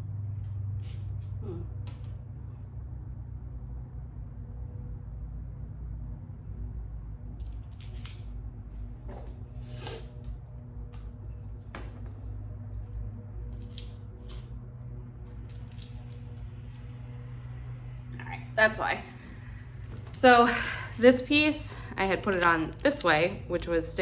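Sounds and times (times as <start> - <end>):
steady low hum: 0.0 - 24.0
small metal pieces clinking: 0.8 - 1.4, 7.4 - 8.3, 12.8 - 14.6, 15.4 - 17.5.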